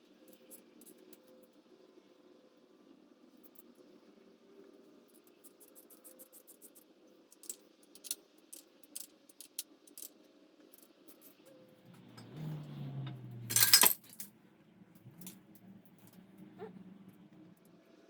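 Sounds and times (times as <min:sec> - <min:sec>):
metal parts and tools clinking: 0:07.4 - 0:10.2, 0:10.8 - 0:14.3.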